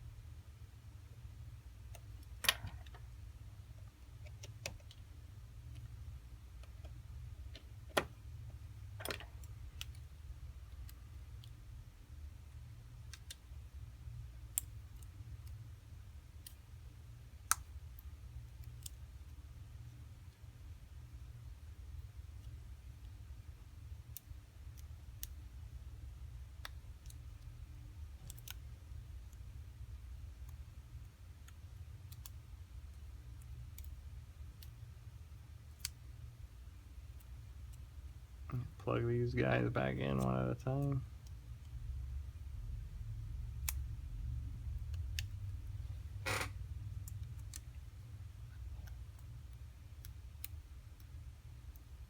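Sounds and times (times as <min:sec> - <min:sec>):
low steady hum: 0:00.0 - 0:52.0.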